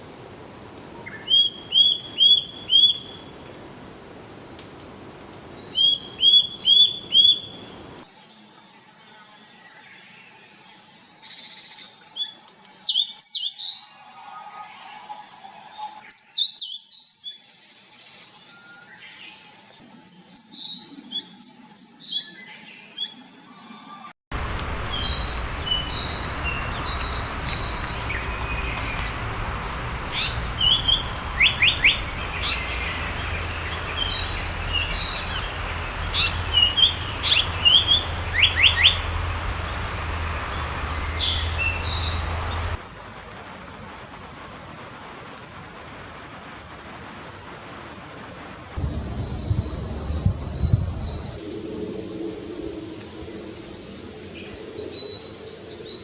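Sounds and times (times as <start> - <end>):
warbler singing high phrase: 1.0 - 4.0, 5.6 - 8.0, 24.4 - 42.8
steady low hum: 24.3 - 42.8.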